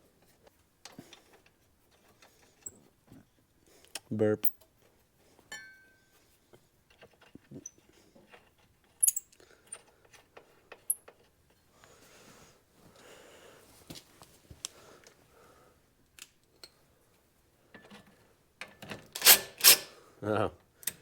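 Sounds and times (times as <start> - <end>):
metal nuts and bolts clinking: 6.9 - 11.3, 18.6 - 19.9
soft rustle: 11.3 - 15.3.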